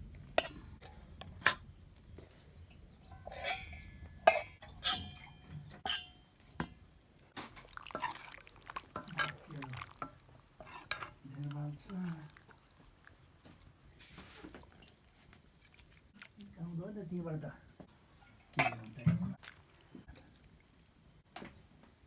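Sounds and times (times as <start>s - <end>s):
utensils clinking against dishes: 3.1s - 6.2s
liquid sounds: 7.4s - 16.7s, 18.2s - 21.1s.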